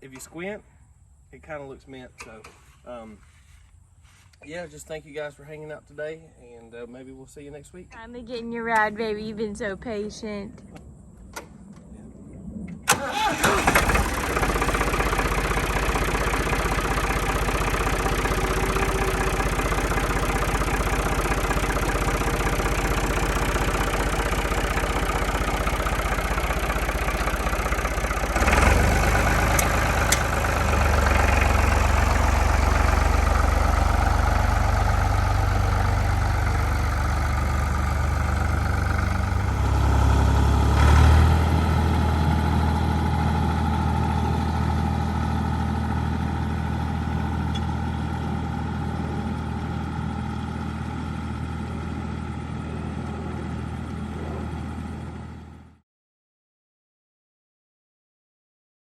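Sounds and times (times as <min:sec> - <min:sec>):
tractor engine idling: 0:12.8 - 0:55.7.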